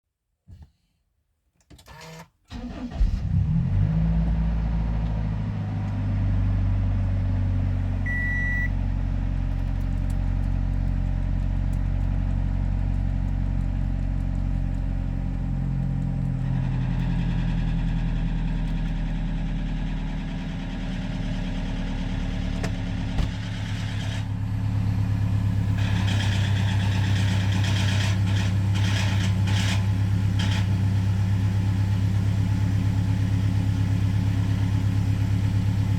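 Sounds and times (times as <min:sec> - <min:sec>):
van engine starting and idling: 0:02.0 - 0:35.9
short beep: 0:08.0 - 0:08.8.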